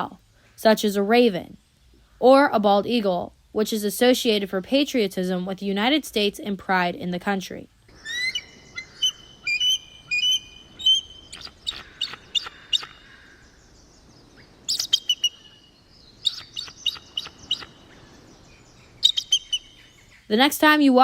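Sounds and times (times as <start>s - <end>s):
eagle chirping whistles: 7.9s - 20.2s.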